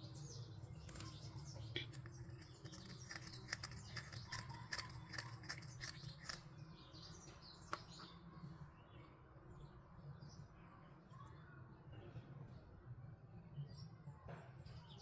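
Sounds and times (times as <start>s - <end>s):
plastic toy pieces clicking: 0.8s - 6.5s.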